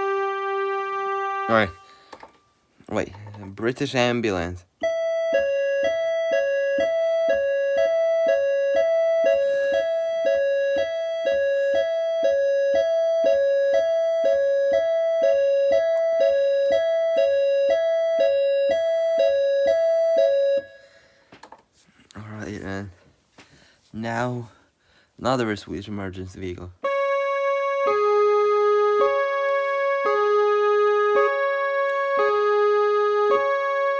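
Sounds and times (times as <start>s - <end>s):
keyboard imitating two-tone siren: 0.0s - 2.1s, 4.8s - 21.0s, 26.8s - 33.9s.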